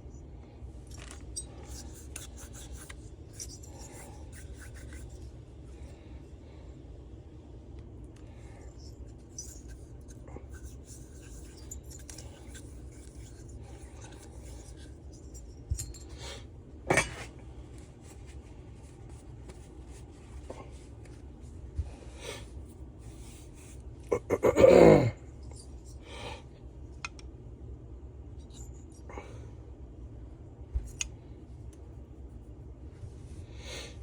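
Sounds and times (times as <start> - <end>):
light clicks and rubbing of tools: 0.8 - 6.0, 7.7 - 21.4, 26.9 - 27.3, 30.8 - 32.2.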